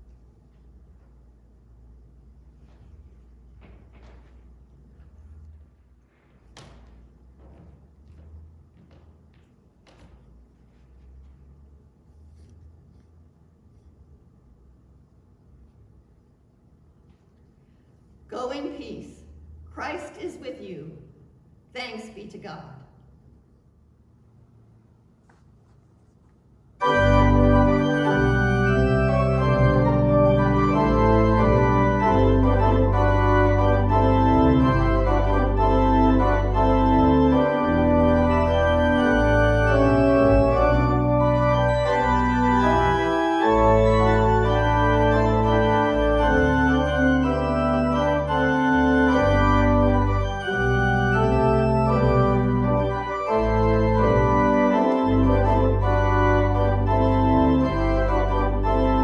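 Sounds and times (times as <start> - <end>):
organ music: 26.8 - 59.0.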